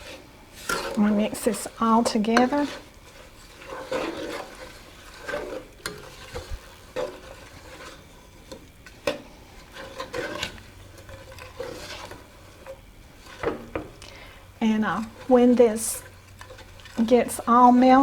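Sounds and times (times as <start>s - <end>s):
spoon scraping saucepan: 0.0s - 13.7s.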